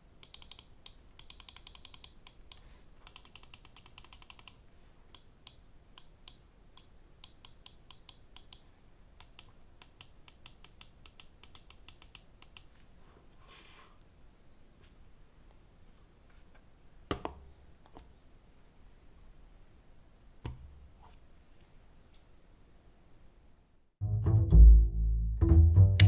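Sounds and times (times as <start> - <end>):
mouse buttons clicking: 0.2 - 12.7.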